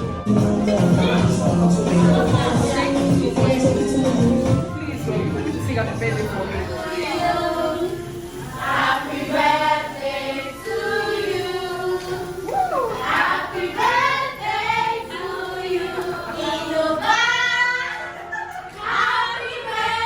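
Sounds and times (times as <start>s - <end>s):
voices singing held notes: 0.1s - 20.0s.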